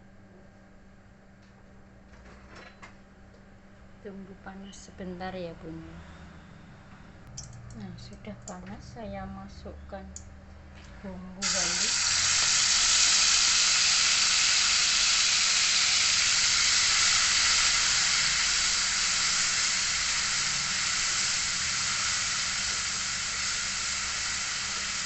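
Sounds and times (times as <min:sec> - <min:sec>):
spice paste sizzling in oil: 0:11.4 - 0:25.0.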